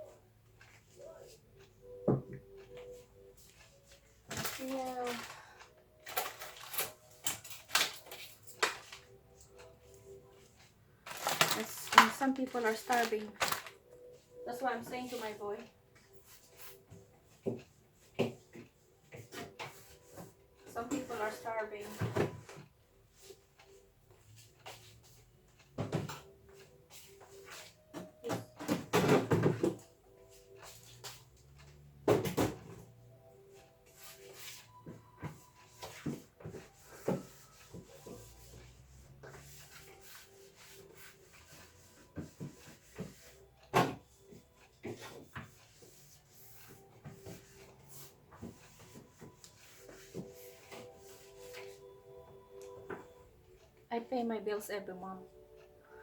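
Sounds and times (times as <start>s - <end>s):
knocks and clatter of things handled: 0.0s - 53.9s
fridge items knocking and clicking: 11.1s - 13.7s, 21.9s - 22.7s, 25.8s - 26.3s, 27.9s - 29.9s, 32.0s - 32.9s, 42.2s - 44.1s.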